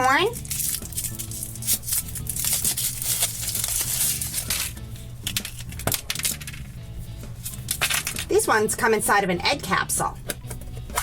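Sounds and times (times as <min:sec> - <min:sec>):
background music with beat: 0:00.0 - 0:08.4, 0:10.2 - 0:11.0
foil wrapper crinkling and tearing: 0:00.3 - 0:06.5, 0:07.4 - 0:08.3.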